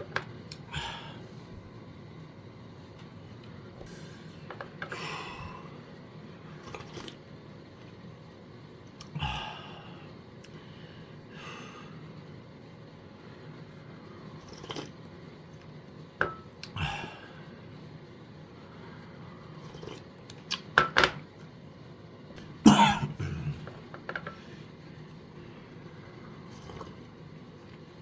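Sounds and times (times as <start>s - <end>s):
person coughing: 22.6s - 23.8s.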